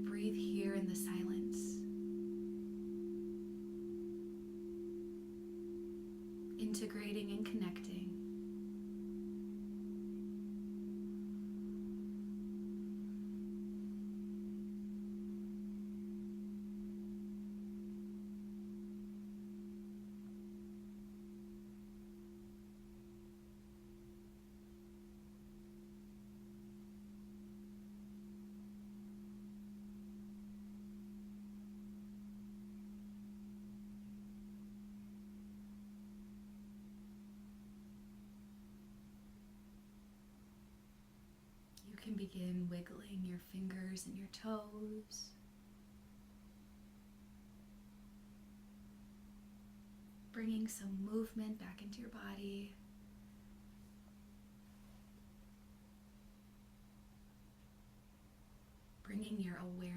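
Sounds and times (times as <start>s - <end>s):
sound-healing instruments ringing: 0.0s - 41.8s.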